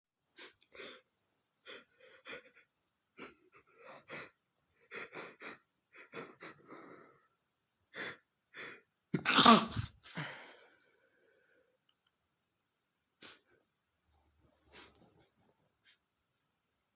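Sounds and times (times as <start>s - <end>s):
man sneezing: 9.2s - 10.3s.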